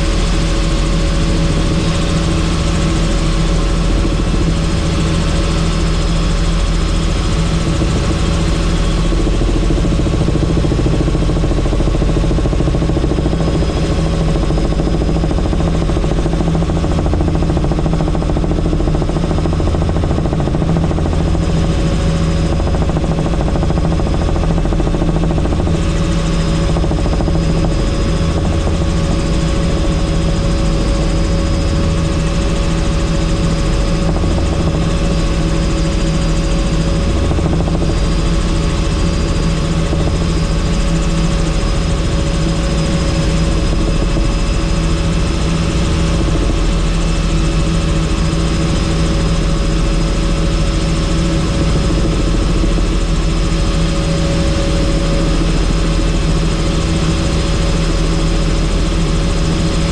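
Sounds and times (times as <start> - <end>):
helicopter rotor and engine drone: 0.0 - 59.9.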